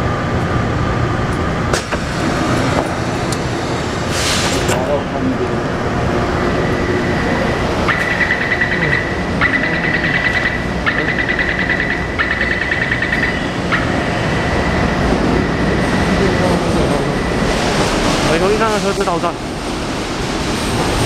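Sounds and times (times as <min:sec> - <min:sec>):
train hum: 0:00.0 - 0:21.0
train door warning beeps: 0:06.5 - 0:17.5.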